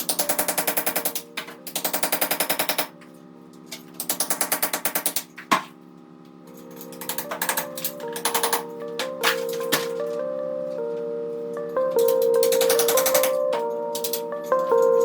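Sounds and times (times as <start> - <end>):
background music with steady tones: 0.0 - 5.2, 6.0 - 15.0
power tool hammering: 3.9 - 5.7.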